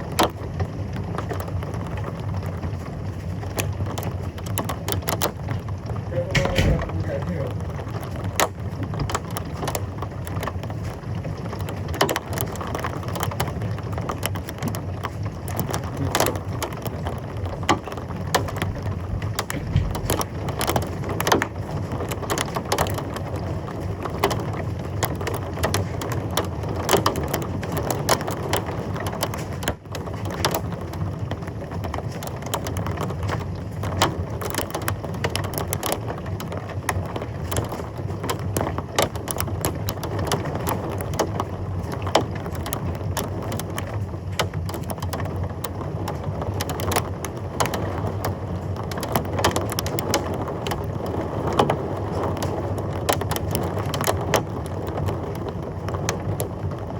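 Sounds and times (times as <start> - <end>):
heavy rain pouring: 0.0 - 56.9
low rumble: 6.1 - 7.8, 18.6 - 21.2
sharp ticks of hard impacts: 6.2 - 9.8, 17.7 - 22.9.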